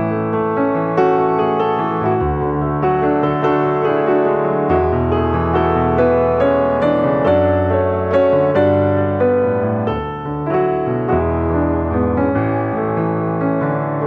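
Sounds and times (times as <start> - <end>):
gentle piano music: 0.0 - 14.0.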